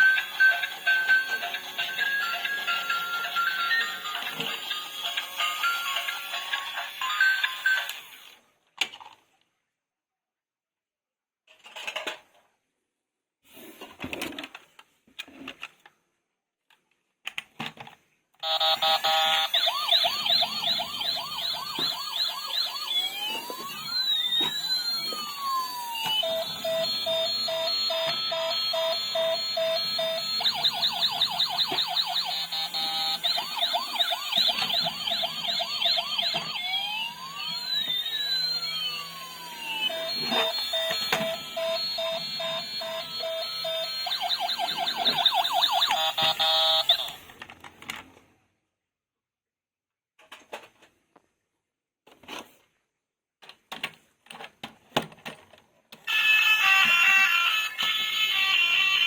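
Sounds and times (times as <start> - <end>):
toy electronic siren: 0.0 - 8.3, 18.4 - 47.3, 56.1 - 59.0
repeated electronic beeping: 18.4 - 47.2.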